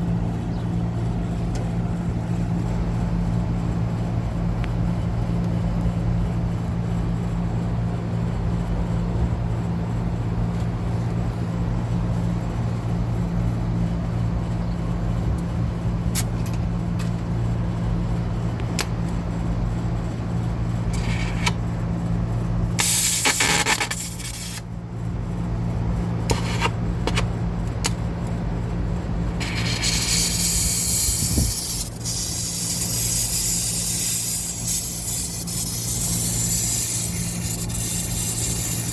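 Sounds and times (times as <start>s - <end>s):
low machine hum: 0.0s - 38.9s
gas hissing: 22.8s - 24.6s, 29.4s - 38.9s.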